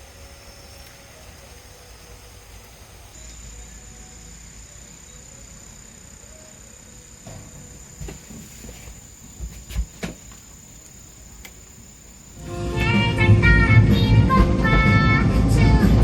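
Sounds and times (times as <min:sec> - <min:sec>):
insects trilling: 0:00.0 - 0:14.1.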